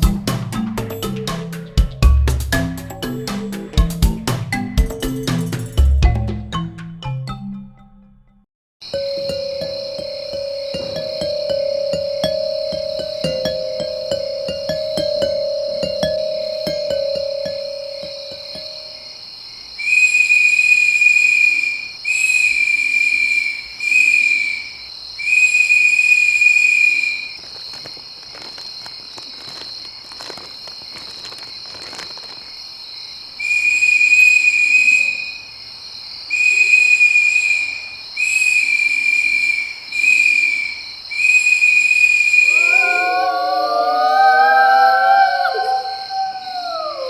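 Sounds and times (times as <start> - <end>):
insect high whine: 8.8 - 32.5, 36.3 - 47.0
insect trills: 8.8 - 47.0
faint insect clicking: 26.4 - 32.6.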